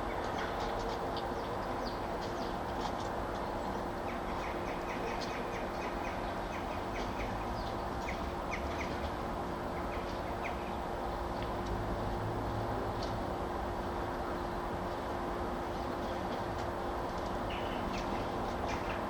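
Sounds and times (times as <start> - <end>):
small birds chirping: 0.0 - 2.8, 3.4 - 11.5.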